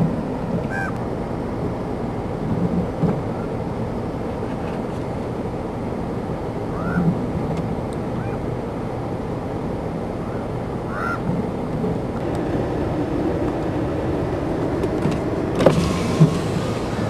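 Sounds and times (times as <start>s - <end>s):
honk-like calls: 0.7s - 1.0s, 6.7s - 7.1s, 10.9s - 11.2s
storm rumble: 10.8s - 17.0s.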